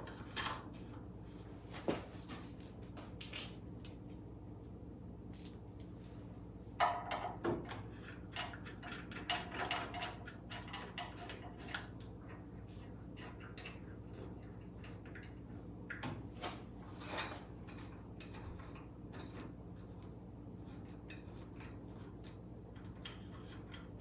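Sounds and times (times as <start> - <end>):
metal tools clinking and rattling: 2.6 - 3.3, 5.4 - 6.2.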